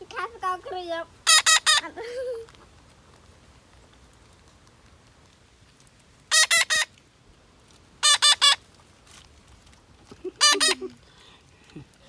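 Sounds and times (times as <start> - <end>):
parrot calling shrilly: 1.2 - 1.9, 6.3 - 6.9, 8.0 - 8.6, 10.4 - 10.9.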